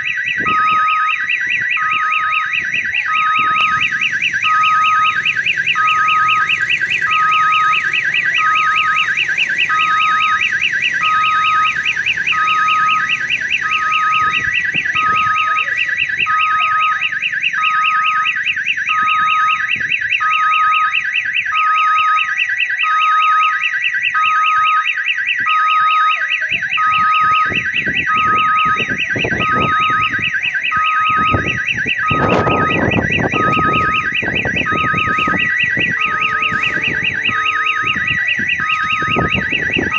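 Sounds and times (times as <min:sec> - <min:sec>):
warbling electronic warning siren: 0:00.0 - 0:39.9
low repeating beep: 0:00.1 - 0:21.0, 0:26.9 - 0:39.9
low rumbling noise: 0:03.3 - 0:17.9, 0:32.2 - 0:39.9.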